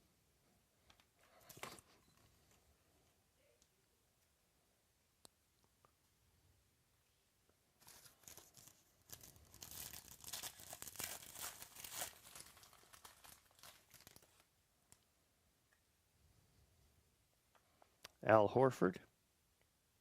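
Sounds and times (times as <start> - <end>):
plastic packaging crinkling and tearing: 7.8 - 14.5.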